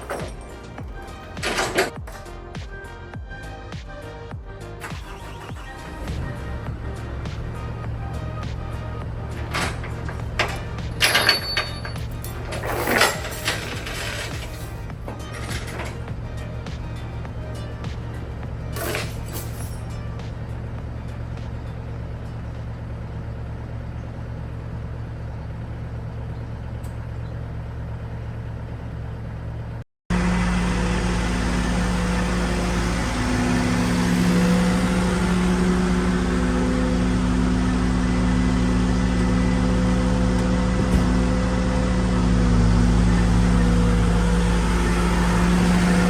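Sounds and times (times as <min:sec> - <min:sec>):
excavator diesel engine running: 0:04.6 - 0:46.0.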